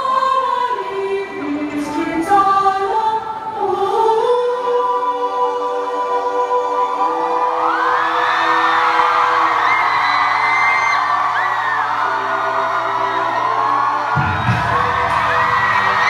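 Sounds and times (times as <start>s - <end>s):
crowd singing in unison: 0.0s - 16.0s
crowd cheering: 6.6s - 16.0s.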